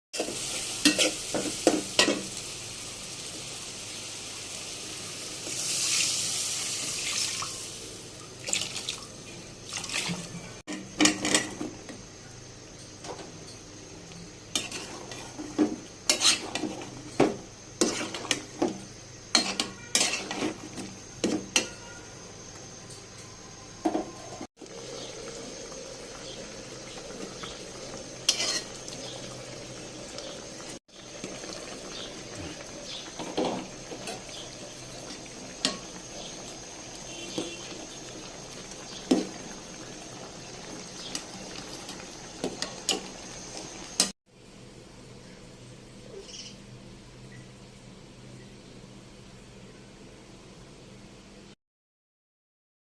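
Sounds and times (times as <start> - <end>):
food frying hiss: 0.1 - 44.2
metal spatula scraping a pan: 0.2 - 2.2, 14.5 - 17.2, 17.8 - 18.6, 19.3 - 22.0, 28.2 - 28.8.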